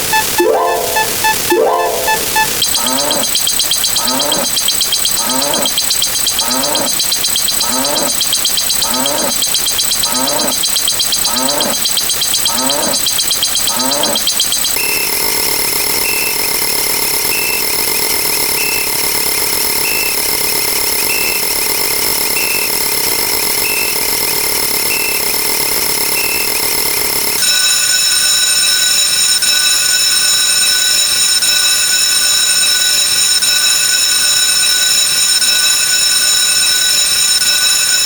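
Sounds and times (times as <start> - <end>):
short electronic beep: 0.0 - 14.6
steady high electronic tones: 0.0 - 14.8, 27.4 - 38.0.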